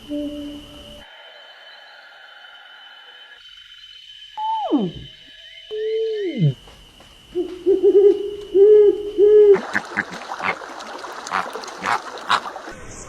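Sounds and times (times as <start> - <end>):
bird hooting: 7.3 - 10.6.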